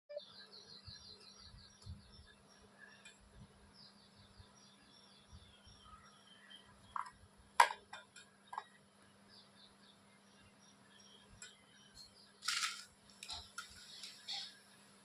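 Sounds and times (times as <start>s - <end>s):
faint bird chirping: 0.1s - 7.5s, 8.3s - 12.7s.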